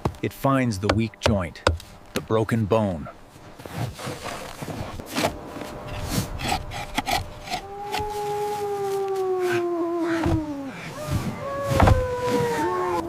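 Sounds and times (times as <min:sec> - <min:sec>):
long falling howl: 0:05.4 - 0:13.0.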